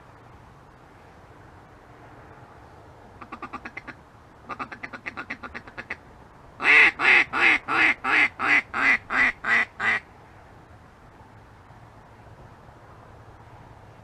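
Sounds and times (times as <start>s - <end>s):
duck call quacks: 3.2s - 6.0s, 6.6s - 10.0s.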